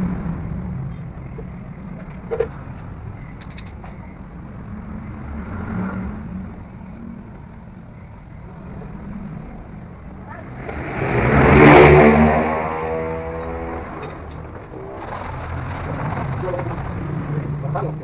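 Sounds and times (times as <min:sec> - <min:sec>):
motor vehicle engine rumble: 0:00.0 - 0:18.0
vehicle passing close by: 0:04.6 - 0:07.6, 0:08.6 - 0:18.0.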